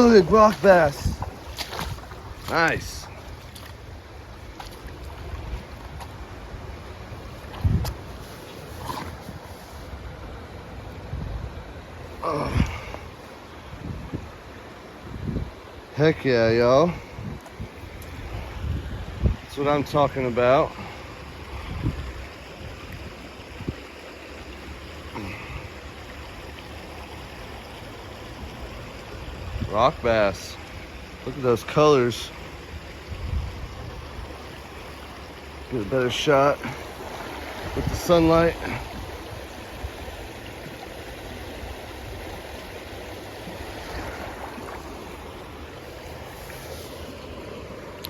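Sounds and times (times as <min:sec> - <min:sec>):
river water rushing over rocks: 0:00.0 - 0:11.0, 0:33.9 - 0:48.0.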